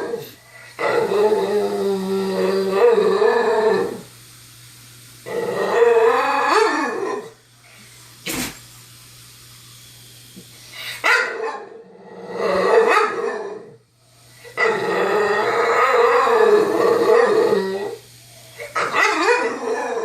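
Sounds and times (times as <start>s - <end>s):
dog barking and growling: 0.0s - 4.1s, 5.2s - 7.4s, 11.0s - 13.8s, 14.5s - 18.0s, 18.6s - 20.0s.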